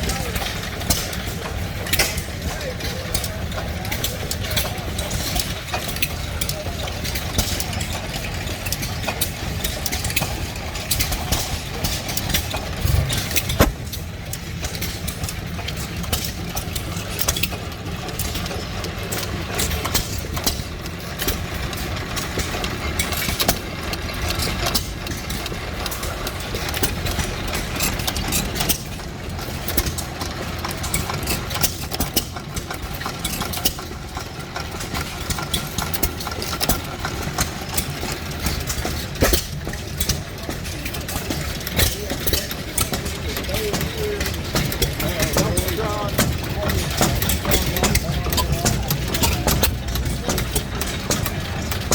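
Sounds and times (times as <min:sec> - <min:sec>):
low mechanical running sound: 0:00.0 - 0:51.9
stationary engines firing: 0:12.3 - 0:14.8.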